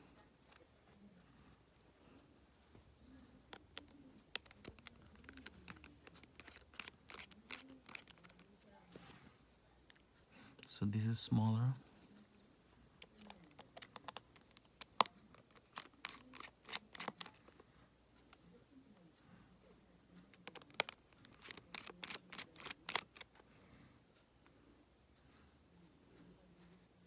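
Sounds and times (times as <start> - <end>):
small tools clicking and tapping: 3.4 - 10.1, 13.0 - 17.6, 20.3 - 23.4.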